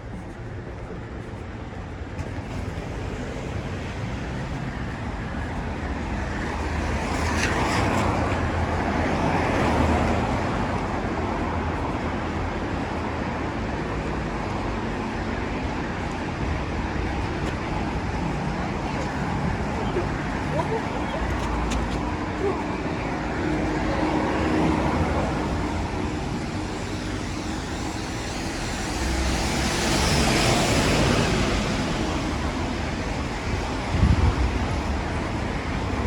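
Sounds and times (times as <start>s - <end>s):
low traffic rumble: 0.0s - 36.0s
car tyres hissing on wet asphalt: 25.2s - 33.0s.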